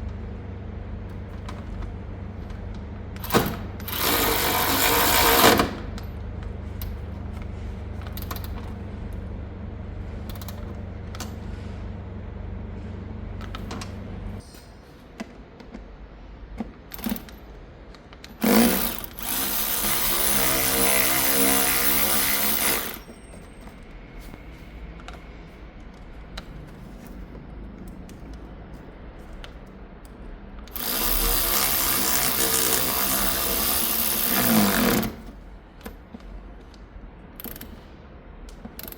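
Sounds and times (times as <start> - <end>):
cordless ratchet motor whirring: 3.2 - 5.8, 18.4 - 23.1, 30.7 - 35.3.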